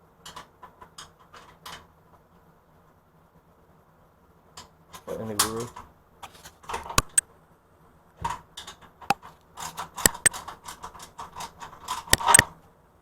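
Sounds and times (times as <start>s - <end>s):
hand tools clicking and clinking: 8.6s - 12.5s.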